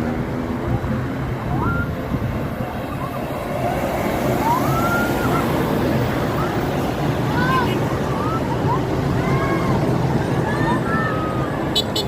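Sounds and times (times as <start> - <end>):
bus engines rumbling: 0.0 - 12.0
road noise: 0.0 - 12.0
bus musical horns: 11.8 - 12.0.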